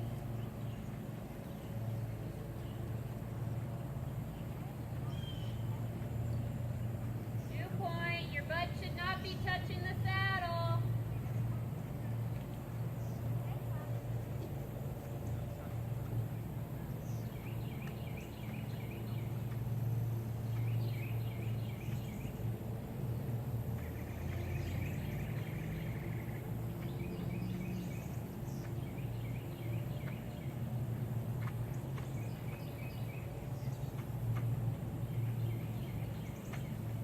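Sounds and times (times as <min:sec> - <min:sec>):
steady low rumble: 0:00.0 - 0:37.0
small birds chirping: 0:10.8 - 0:37.0.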